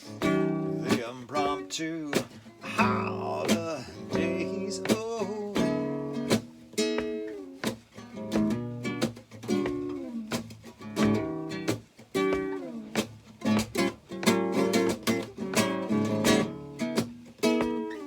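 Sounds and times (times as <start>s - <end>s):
acoustic guitar picking and strumming: 0.0s - 18.0s.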